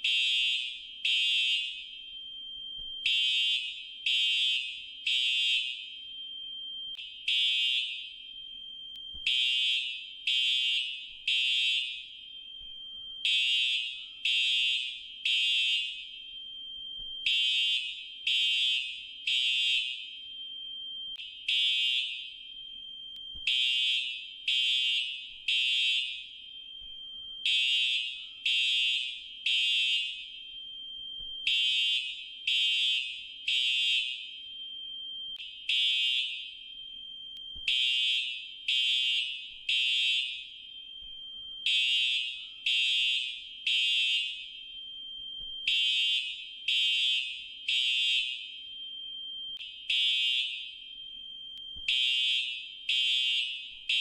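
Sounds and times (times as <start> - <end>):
fire alarm beeping: 0.0 - 54.0.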